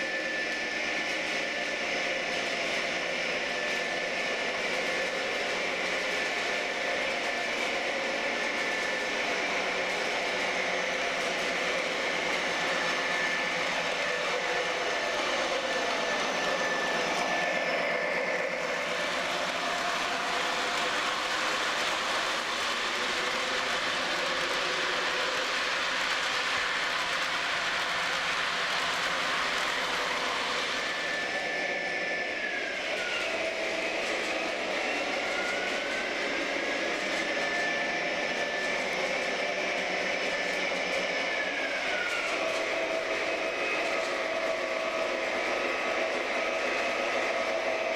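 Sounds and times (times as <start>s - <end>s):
model locomotive engine sound: 0.0s - 47.9s
model train wheel and motor noise: 0.0s - 47.9s.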